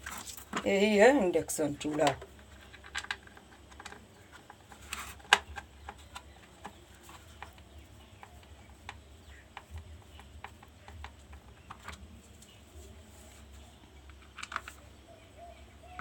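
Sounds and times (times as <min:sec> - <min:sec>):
small hard parts clicking: 0:01.8 - 0:12.6, 0:14.0 - 0:14.8.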